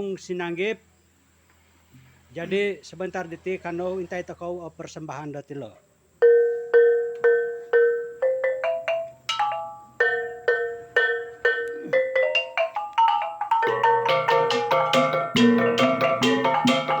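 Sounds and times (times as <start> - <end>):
gong-chime struck with beaters: 13.6 - 17.0
lower gongs: 13.6 - 17.0.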